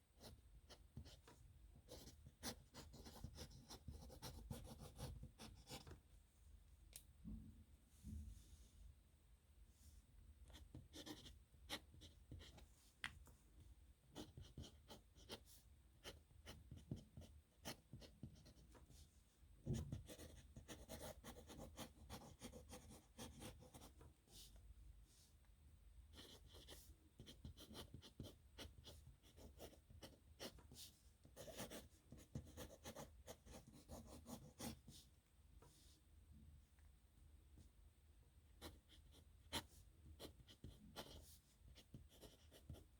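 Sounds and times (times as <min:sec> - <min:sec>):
pen scratching on paper: 0:01.9 - 0:05.9, 0:10.5 - 0:12.6, 0:14.2 - 0:15.4, 0:19.9 - 0:23.9, 0:26.2 - 0:35.0, 0:38.6 - 0:42.9.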